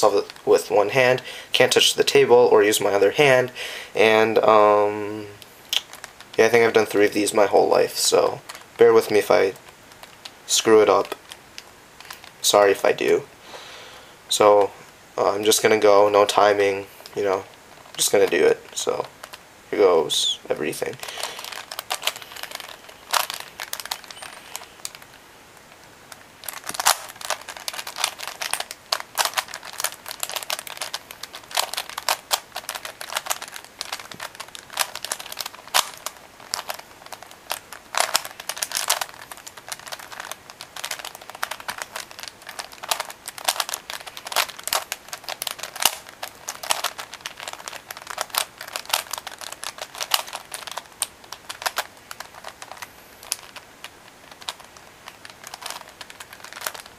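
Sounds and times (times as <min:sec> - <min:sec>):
puzzle cube plastic clicking: 0:21.0 - 0:56.9.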